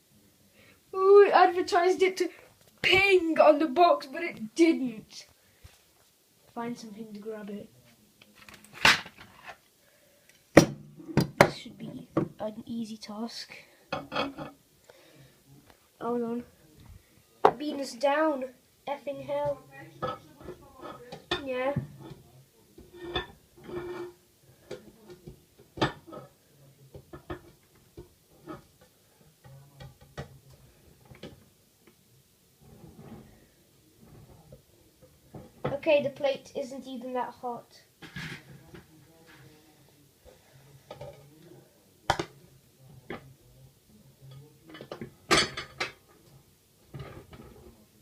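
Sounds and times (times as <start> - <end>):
dishes clinking and knocking: 10.6 - 11.6, 13.9 - 14.6, 20.0 - 31.5, 38.0 - 38.9, 40.9 - 41.3, 42.1 - 42.4, 44.2 - 46.2, 46.9 - 47.8.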